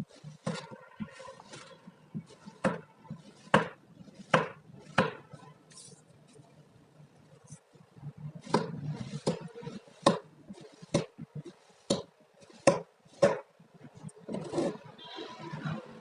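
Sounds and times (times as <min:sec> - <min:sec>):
knife scrape: 0:00.0 - 0:06.4, 0:08.4 - 0:13.3.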